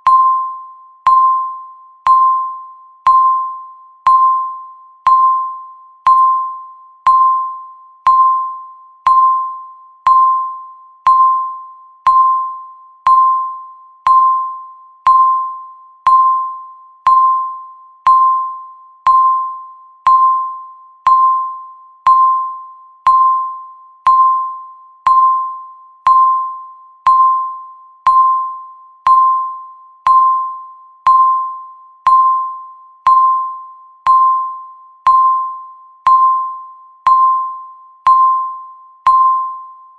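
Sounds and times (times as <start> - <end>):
timer ticking with bell-like ring: 0.0 - 39.9.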